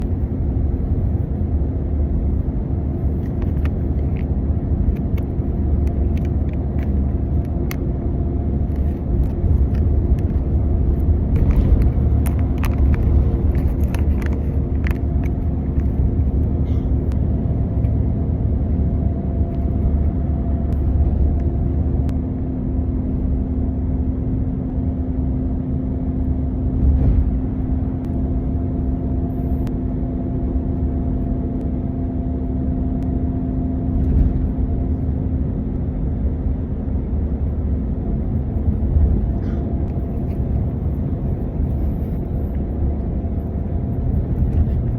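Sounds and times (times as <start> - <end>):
bus engine and road rumble: 0.0 - 44.9
constant hum: 0.0 - 44.9
light clicks and rustles: 8.7 - 16.0.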